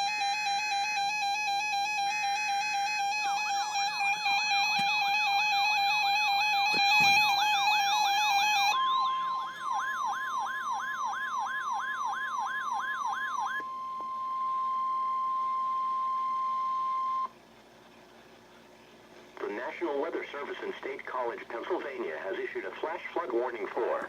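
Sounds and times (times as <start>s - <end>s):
siren yelp: 0.0s - 17.4s
steady warning alarm tone: 0.0s - 17.8s.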